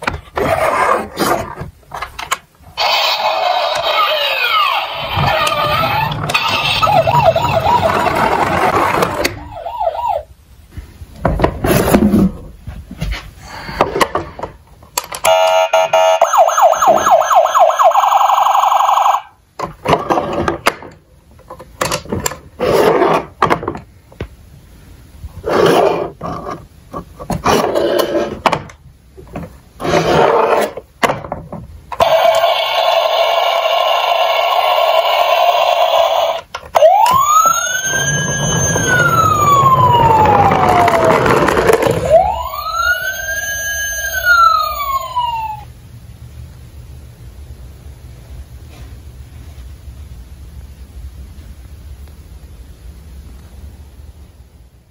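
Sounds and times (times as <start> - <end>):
toy electronic sirens: 2.8 - 10.3, 15.2 - 19.4, 32.0 - 45.7.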